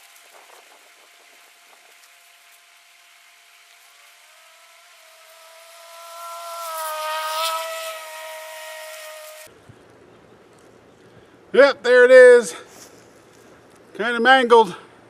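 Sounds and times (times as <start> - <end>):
motor engine drone: 0.4 - 9.5.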